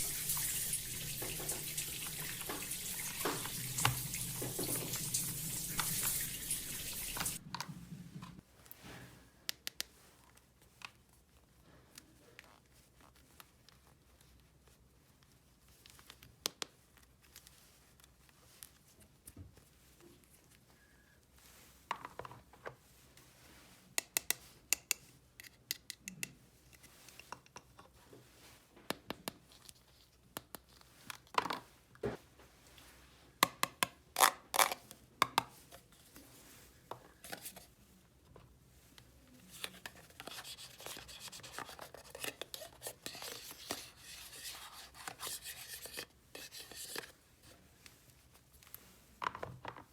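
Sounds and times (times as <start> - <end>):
plastic toy pieces handled: 34.2 - 36.0, 39.5 - 47.2.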